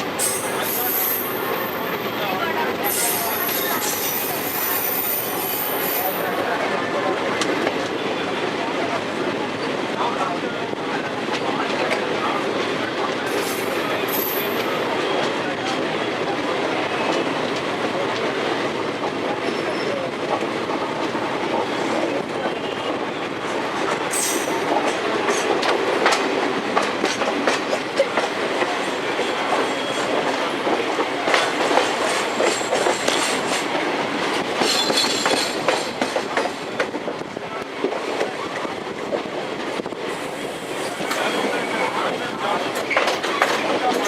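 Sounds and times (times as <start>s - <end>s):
train rumbling: 0.0s - 44.0s.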